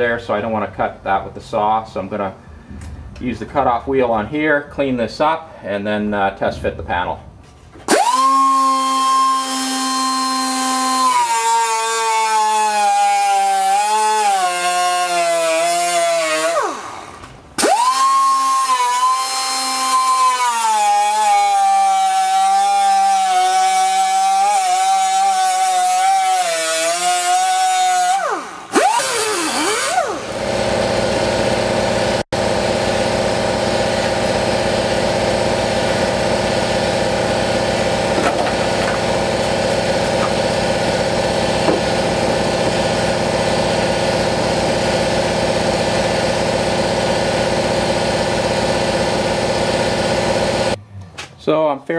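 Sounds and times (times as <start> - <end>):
mechanical hum with low drone: 0.0 - 8.6, 28.4 - 51.9
cutoff wheel cutting sheet metal: 7.9 - 50.8.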